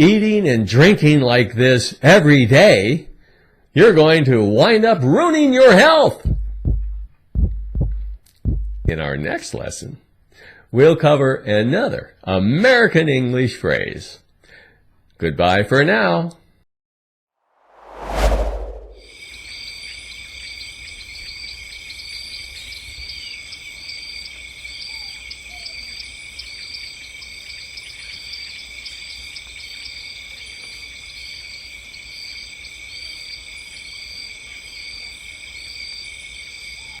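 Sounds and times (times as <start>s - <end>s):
insects trilling: 19.4s - 37.0s
insect chirping rhythmically: 19.5s - 37.0s.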